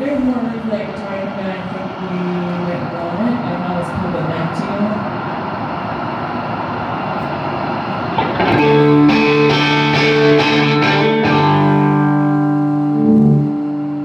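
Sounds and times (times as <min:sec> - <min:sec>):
steady noise: 0:00.0 - 0:14.0
distorted electric guitar chords: 0:07.9 - 0:14.0.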